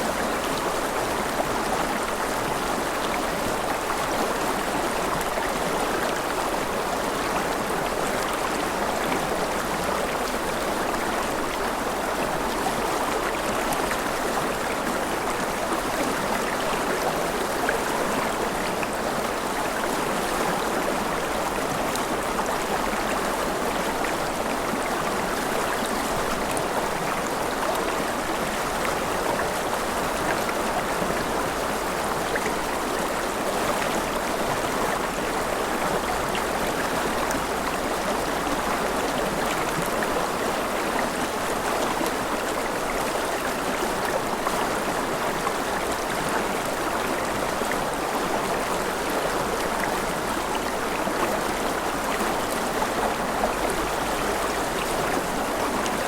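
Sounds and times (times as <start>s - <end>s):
river water rushing: 0.0s - 56.0s.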